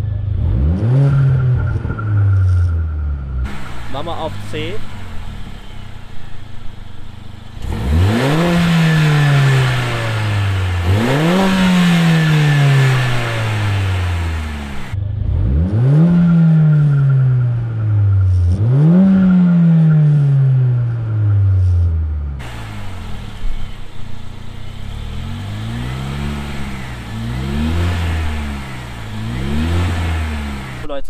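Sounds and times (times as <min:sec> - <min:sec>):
hiss: 0:03.5 - 0:15.0, 0:22.4 - 0:30.9
car engine revving: 0:03.5 - 0:17.8, 0:22.4 - 0:31.0.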